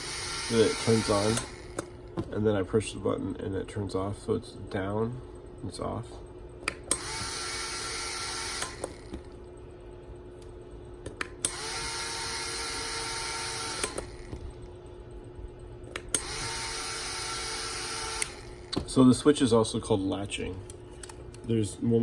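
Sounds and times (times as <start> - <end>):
small electric motor whine: 0.0 - 2.1, 6.9 - 9.3, 11.4 - 14.6, 16.1 - 18.9.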